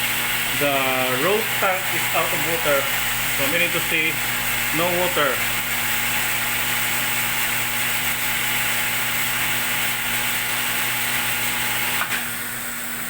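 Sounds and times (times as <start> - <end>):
electric pump motor hum: 0.0 - 13.0.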